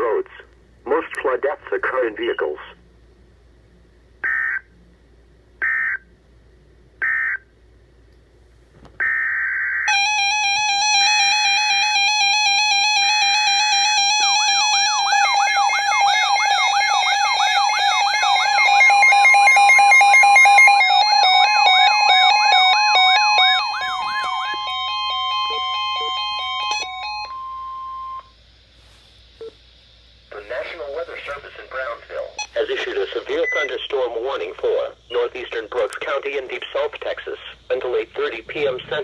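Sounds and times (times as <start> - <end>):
fast warbling siren tone: 5.6 - 6.0, 9.0 - 28.2
electronic data tone bursts: 9.9 - 28.4, 30.3 - 34.1
steady electronic tones: 9.9 - 28.4.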